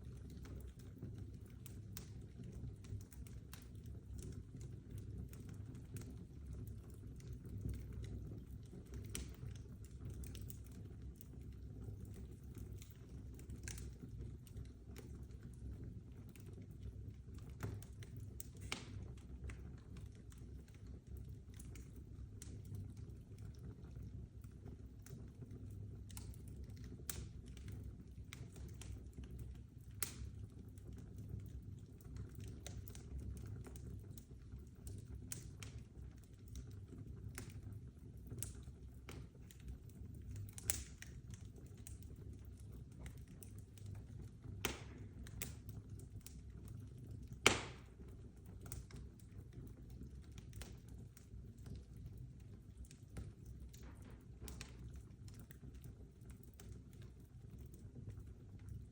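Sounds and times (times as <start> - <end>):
low roar of flames: 0.0 - 58.6
fire crackling and popping: 0.0 - 58.9
loud fire pops: 18.6 - 19.2, 44.5 - 45.7, 47.4 - 48.2, 53.7 - 54.9.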